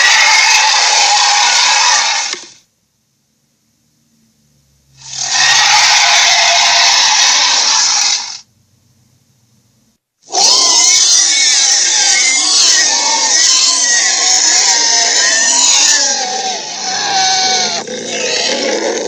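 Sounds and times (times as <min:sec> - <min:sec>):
creature crying: 0:00.0 - 0:02.5, 0:05.0 - 0:08.4, 0:10.3 - 0:19.0
creature hissing: 0:05.0 - 0:08.4, 0:10.3 - 0:18.7.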